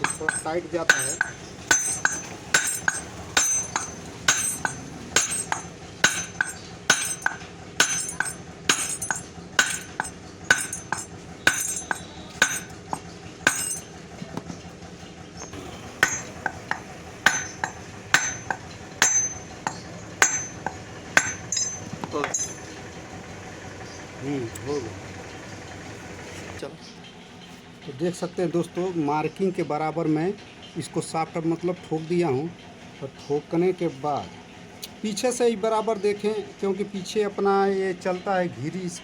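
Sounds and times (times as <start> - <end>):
hammer blows with ringing: 0.0 - 14.0, 15.5 - 22.8.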